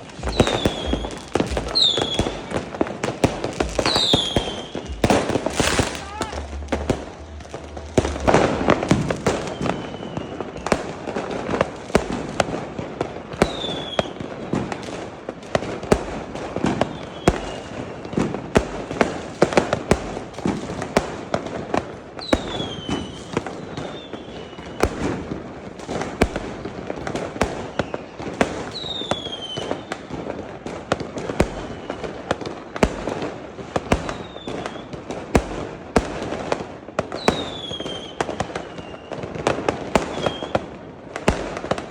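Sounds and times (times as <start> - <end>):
falling firework whistle: 0.0 - 12.5, 13.3 - 14.8, 16.6 - 18.5, 22.2 - 25.4, 27.2 - 30.2, 31.2 - 32.9, 33.8 - 35.3, 37.0 - 41.9
fireworks bangs and crackling: 0.0 - 41.9.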